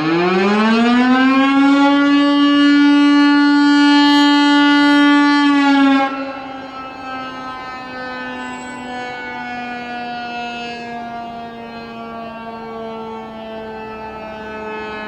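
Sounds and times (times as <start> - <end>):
fire alarm siren: 0.0 - 15.0.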